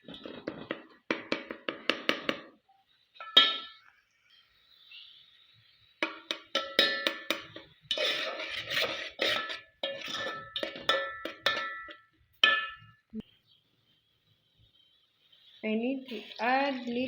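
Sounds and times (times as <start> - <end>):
metal utensil clanking on pot: 3.2 - 3.8, 6.0 - 12.9.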